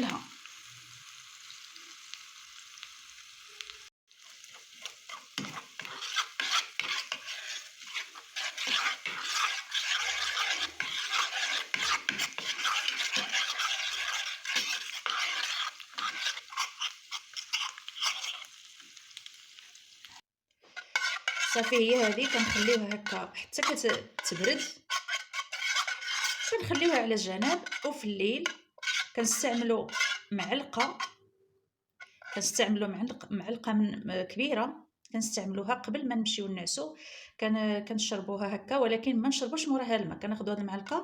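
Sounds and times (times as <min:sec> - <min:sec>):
sizzling in a frying pan: 0:00.0 - 0:31.2
spoon stirring and scraping a pan: 0:03.5 - 0:19.9, 0:20.6 - 0:31.3, 0:32.0 - 0:33.2, 0:40.5 - 0:41.0.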